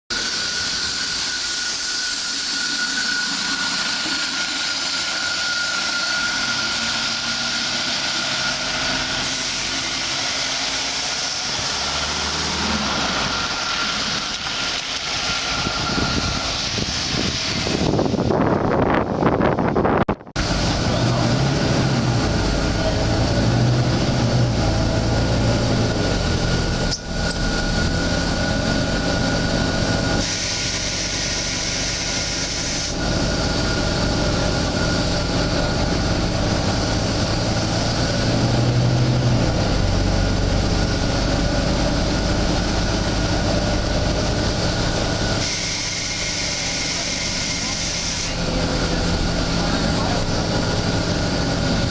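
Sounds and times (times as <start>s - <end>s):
bus diesel engine running: 0.1s - 51.9s
road noise: 0.1s - 51.9s.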